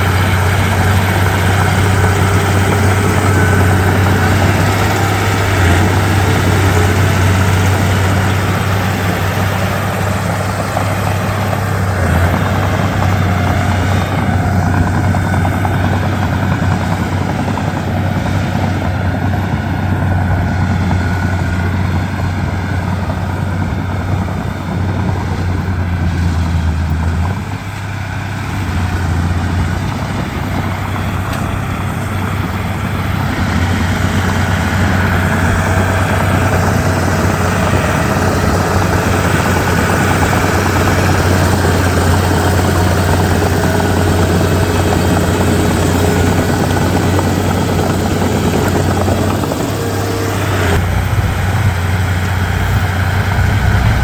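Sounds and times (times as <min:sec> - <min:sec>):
bulldozer diesel engine: 0:00.0 - 0:54.0.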